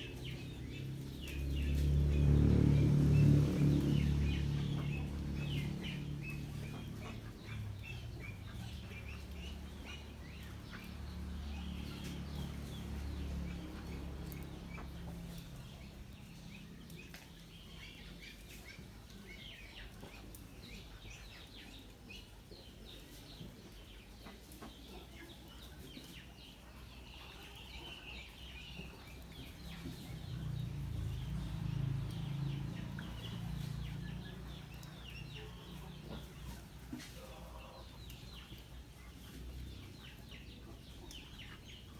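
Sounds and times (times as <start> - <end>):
low rumble: 0.0 - 10.3
poultry chirping and clucking: 0.0 - 41.9.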